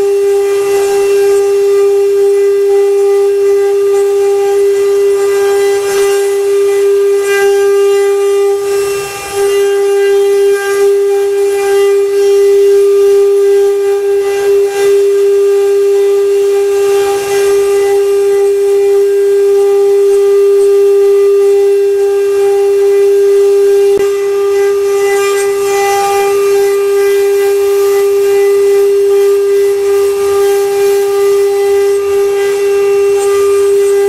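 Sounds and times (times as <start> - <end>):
machine spindle whine: 0.0 - 34.0.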